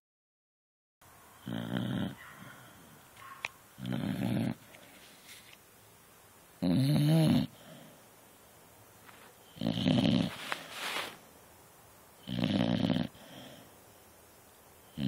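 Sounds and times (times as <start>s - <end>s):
dog snoring: 1.4s - 2.9s, 3.8s - 4.7s, 6.6s - 8.0s, 9.5s - 11.1s, 12.2s - 13.7s.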